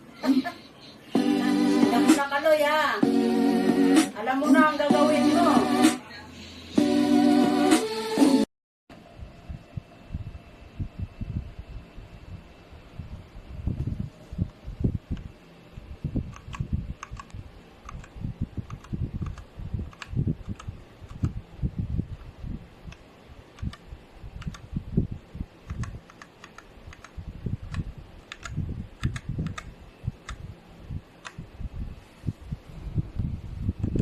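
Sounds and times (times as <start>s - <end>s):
mechanical keyboard typing: 16.3s - 21.4s, 23.6s - 23.8s, 24.4s - 24.7s, 25.6s - 30.4s.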